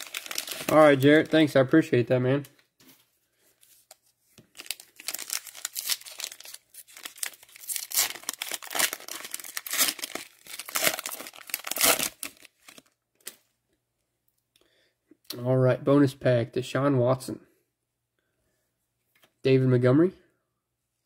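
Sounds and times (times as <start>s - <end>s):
wrapper tearing and crinkling: 0.0s - 1.4s, 4.5s - 13.4s.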